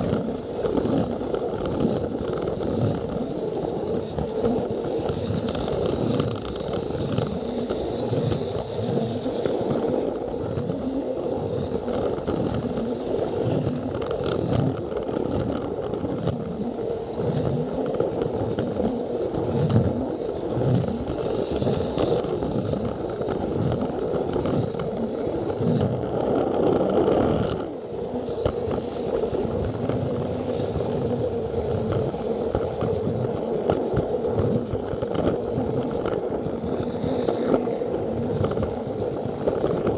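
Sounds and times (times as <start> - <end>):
toy train motor whine: 0.0 - 14.4
plastic wheels clacking on track: 0.0 - 39.9.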